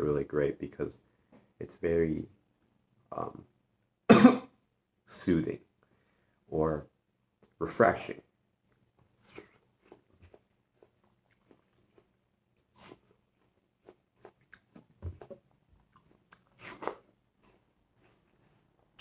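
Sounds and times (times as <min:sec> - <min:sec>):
crunchy watermelon chewing: 0:08.7 - 0:19.0.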